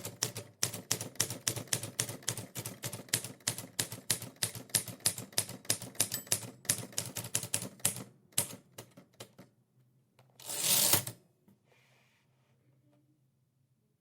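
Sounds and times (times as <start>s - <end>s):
typewriter carriage sliding: 10.4s - 11.2s.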